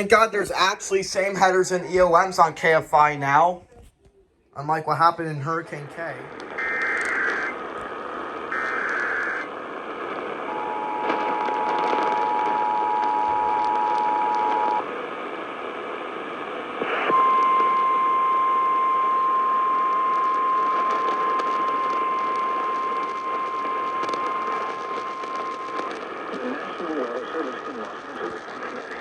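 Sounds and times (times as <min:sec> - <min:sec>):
radio hiss: 0:00.0 - 0:03.5, 0:04.6 - 0:17.5, 0:19.9 - 0:29.0
steady warning alarm tone: 0:06.6 - 0:07.6, 0:08.5 - 0:09.5.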